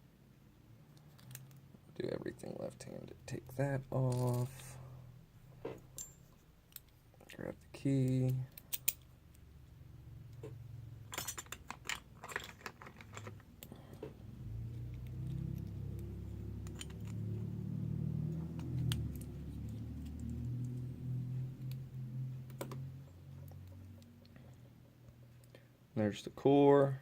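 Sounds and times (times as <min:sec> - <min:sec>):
low rumbling handling noise: 0:10.2 - 0:25.5
keys clicking and jingling: 0:11.1 - 0:13.7, 0:16.6 - 0:17.2.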